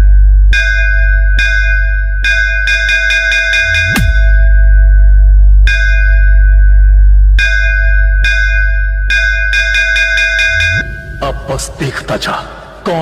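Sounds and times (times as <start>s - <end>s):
sustained sub-bass: 0.0s - 2.2s, 3.7s - 9.5s.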